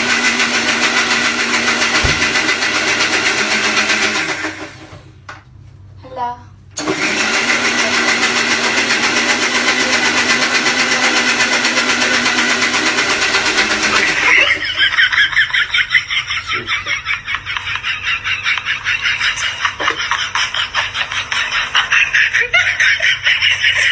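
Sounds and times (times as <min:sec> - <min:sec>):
mixer grinder whirring: 0:00.0 - 0:05.3, 0:06.8 - 0:15.5.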